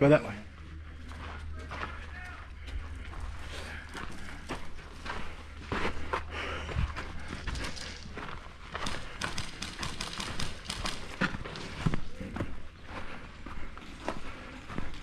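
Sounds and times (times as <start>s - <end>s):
running footsteps on hard ground: 0.9s - 15.0s.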